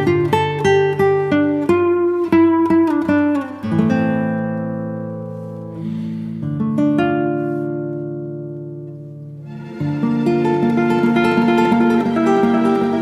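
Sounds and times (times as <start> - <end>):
slow guitar chords ringing: 0.0 - 13.0.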